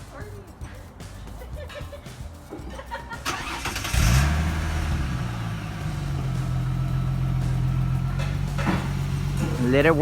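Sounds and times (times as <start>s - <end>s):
car engine starting and idling: 3.2s - 10.0s.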